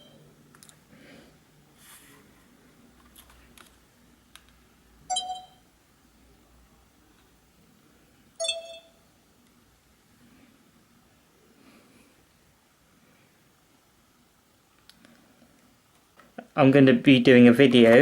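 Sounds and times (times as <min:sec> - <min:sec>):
camcorder confirmation beep: 0:05.1 - 0:05.6, 0:08.4 - 0:08.9.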